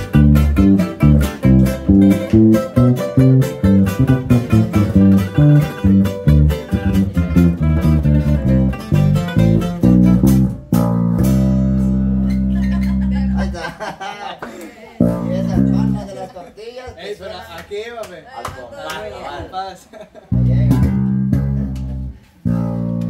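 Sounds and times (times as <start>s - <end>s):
bass line: 0.0s - 13.7s, 15.0s - 16.3s, 20.3s - 23.0s
guitars playing ranchera: 0.0s - 13.8s, 15.0s - 16.3s, 20.3s - 23.0s.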